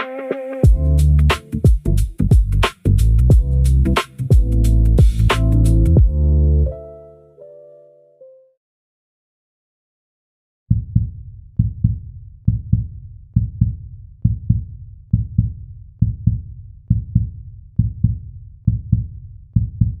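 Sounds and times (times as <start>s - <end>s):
heartbeat thumps: 0.6s - 1.0s, 1.6s - 2.7s, 3.3s - 3.7s, 4.3s - 6.2s, 10.7s - 20.0s.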